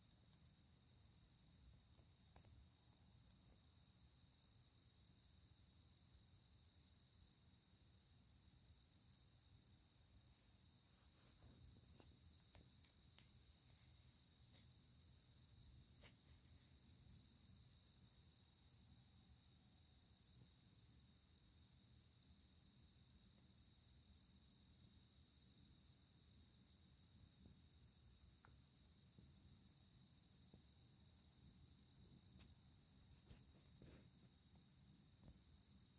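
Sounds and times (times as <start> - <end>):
crickets chirping: 0.0 - 35.9
faint ticks: 1.9 - 2.6, 10.3 - 14.8, 28.4 - 29.3, 32.3 - 32.6, 33.2 - 34.2.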